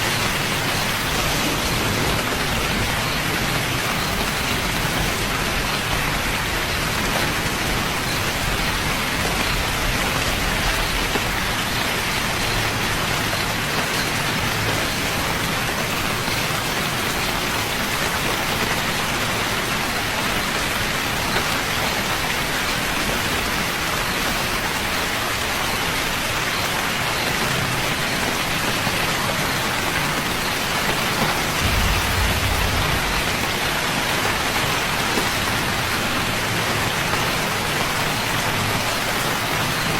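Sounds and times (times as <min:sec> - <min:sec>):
steady rain falling: 0:00.0 - 0:39.9
low rumbles: 0:31.4 - 0:35.6.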